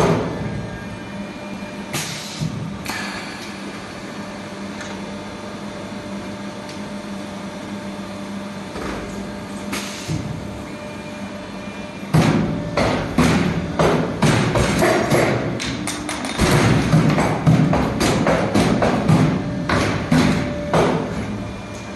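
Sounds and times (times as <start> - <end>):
machine humming: 0.0 - 21.9
loud knocks: 16.0 - 21.1.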